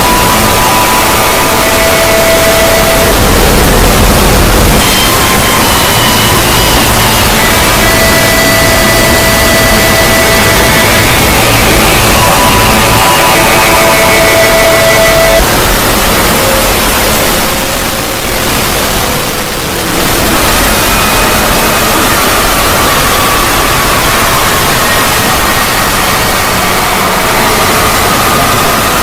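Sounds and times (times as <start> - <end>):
dense hiss-like noise: 0.0 - 29.0
faint high drifting tones: 0.0 - 29.0.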